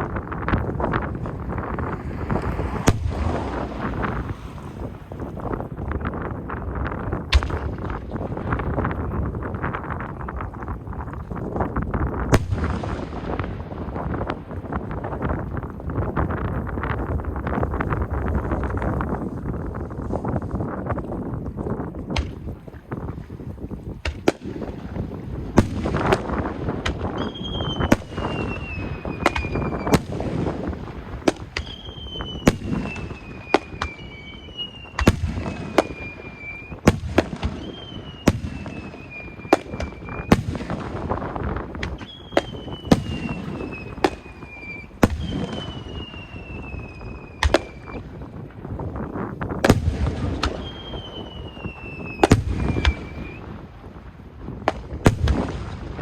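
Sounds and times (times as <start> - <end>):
falling firework whistles: 27.1 - 40.5, 41.9 - 48.1, 50.4 - 53.5.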